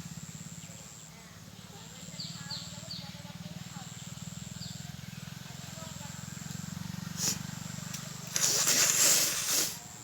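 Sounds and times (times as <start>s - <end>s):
person blowing nose: 7.2s - 7.4s, 8.4s - 9.8s
person sniffing: 7.2s - 7.4s, 8.4s - 9.8s.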